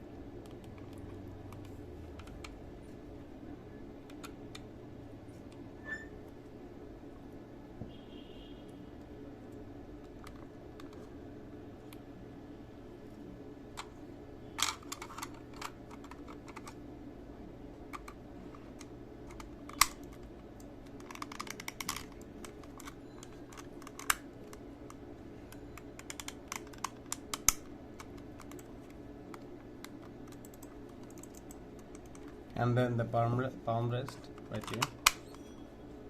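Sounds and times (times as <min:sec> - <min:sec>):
plastic clicks and snaps: 0:18.8 - 0:25.0, 0:34.0 - 0:35.3.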